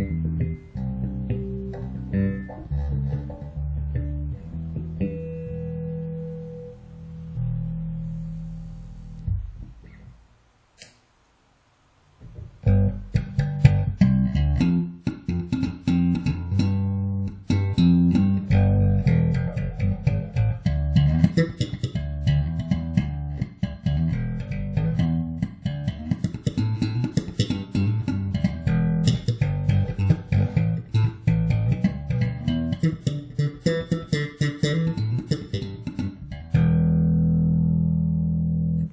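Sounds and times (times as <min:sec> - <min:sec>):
electric bass playing: 0:00.0 - 0:10.2, 0:12.2 - 0:38.9
click: 0:10.8 - 0:11.1.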